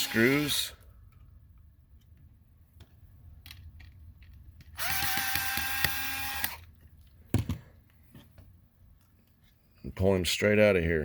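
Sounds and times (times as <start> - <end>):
power screwdriver whine: 0.0 - 0.7, 4.8 - 6.7.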